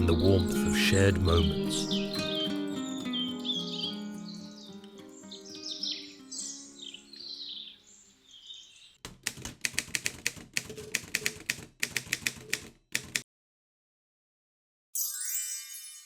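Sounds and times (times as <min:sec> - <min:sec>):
gentle music: 0:00.0 - 0:08.3, 0:15.0 - 0:16.0
birds chirping: 0:00.0 - 0:09.0
typewriter clacking: 0:09.0 - 0:13.2.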